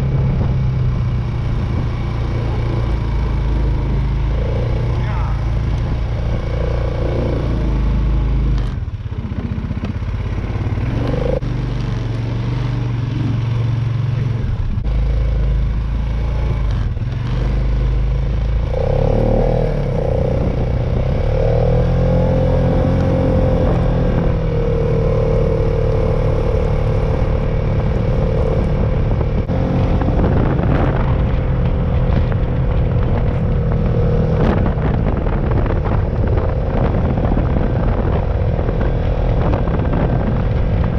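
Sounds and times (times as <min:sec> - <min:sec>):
atv engine running: 0:00.0 - 0:40.9.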